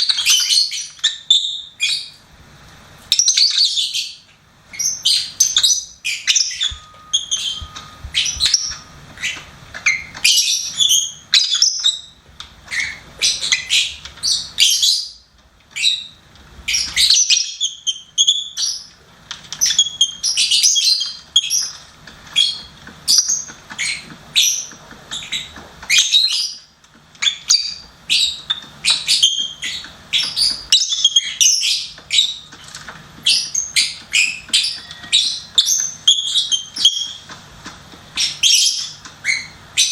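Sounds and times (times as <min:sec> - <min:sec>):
birds chirping shrilly: 0:04.8 - 0:15.2, 0:27.2 - 0:32.5.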